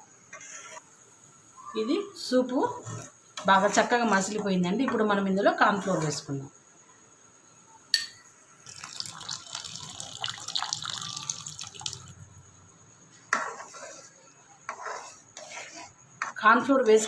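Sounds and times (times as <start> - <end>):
sharp clink: 7.9 - 8.3
liquid pouring and splashing: 8.6 - 12.1.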